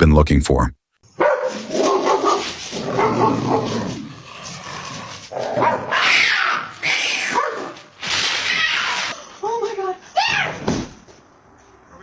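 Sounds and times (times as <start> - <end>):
dog barking: 1.2 - 3.7, 5.6 - 6.6, 7.3 - 7.7.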